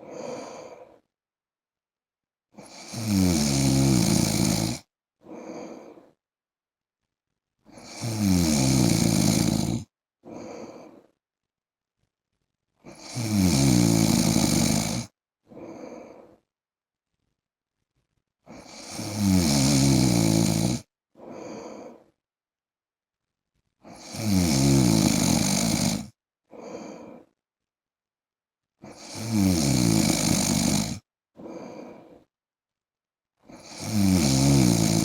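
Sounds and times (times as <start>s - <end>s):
man snoring: 0.0s - 1.0s, 2.6s - 6.1s, 7.7s - 11.1s, 12.9s - 16.4s, 18.5s - 22.1s, 23.9s - 27.3s, 28.8s - 32.3s, 33.5s - 35.0s
quiet breath sound: 0.0s - 1.2s, 4.5s - 6.2s, 9.5s - 11.2s, 14.2s - 16.5s, 20.6s - 22.2s, 25.4s - 27.4s, 30.6s - 32.4s.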